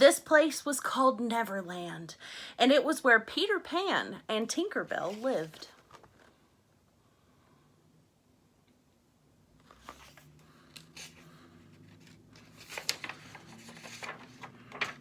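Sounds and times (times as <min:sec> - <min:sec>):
paper page turning: 0:04.9 - 0:06.3, 0:09.6 - 0:15.0.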